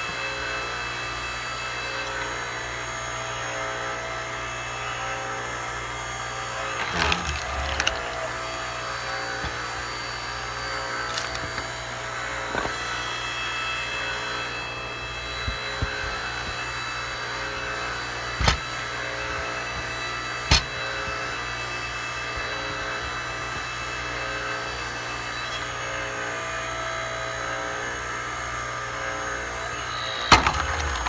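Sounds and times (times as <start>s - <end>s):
log splitter motor hum: 6.4s - 12.9s, 17.2s - 21.6s, 22.3s - 31.0s
log cracking as it splits: 6.8s - 8.4s, 11.0s - 11.9s.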